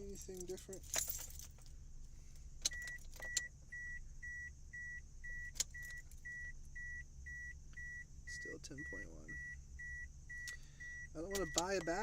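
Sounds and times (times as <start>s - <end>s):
car warning chime beeping: 2.7s - 12.0s.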